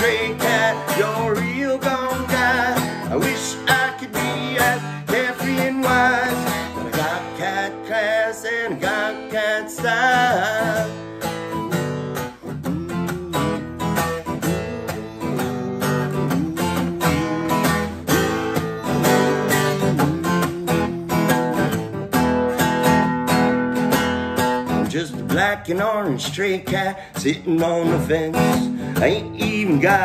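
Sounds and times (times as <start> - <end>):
acoustic guitar chords: 0.0 - 30.0
lead guitar bent notes: 11.3 - 24.6.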